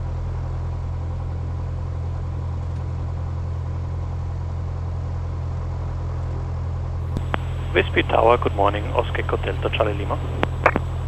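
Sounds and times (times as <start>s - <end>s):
airplane cockpit drone: 7.1s - 11.0s.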